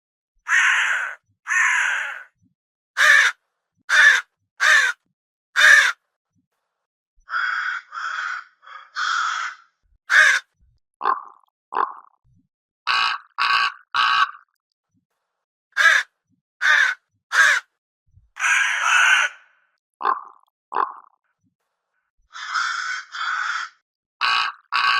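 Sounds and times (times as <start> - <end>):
crow cawing: 0.5 - 2.3, 3.0 - 5.0, 5.6 - 6.0, 7.3 - 10.5, 15.8 - 17.7, 18.4 - 20.2, 22.3 - 24.9.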